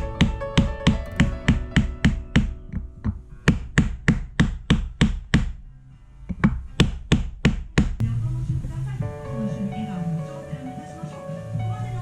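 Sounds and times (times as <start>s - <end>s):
music with knocking beat: 0.0s - 5.6s, 6.3s - 8.0s.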